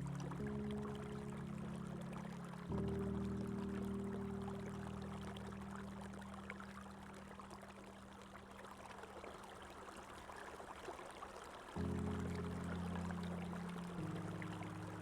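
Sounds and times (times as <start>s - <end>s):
sustained music chord: 0.0s - 7.6s, 11.8s - 15.0s.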